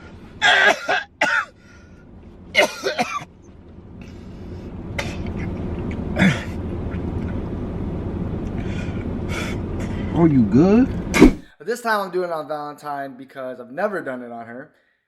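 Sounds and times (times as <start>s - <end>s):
low background rumble: 0.0s - 11.5s
man coughing and hacking: 0.4s - 1.6s, 2.6s - 3.3s, 5.0s - 6.6s, 11.1s - 11.5s.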